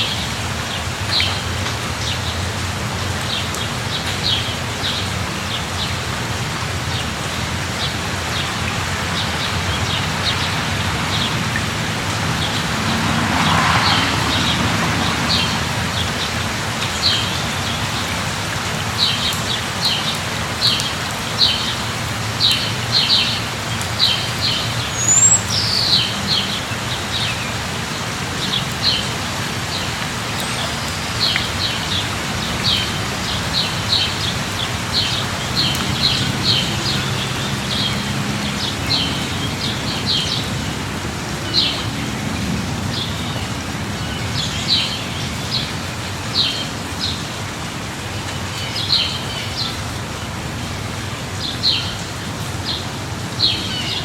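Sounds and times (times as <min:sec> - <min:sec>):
rain falling: 0:00.0 - 0:54.0
rush of noise: 0:09.8 - 0:16.8
bird chirping: 0:24.9 - 0:26.2.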